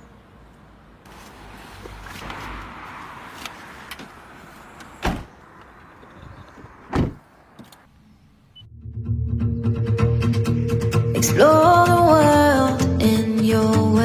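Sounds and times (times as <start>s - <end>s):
music: 8.7s - 14.0s.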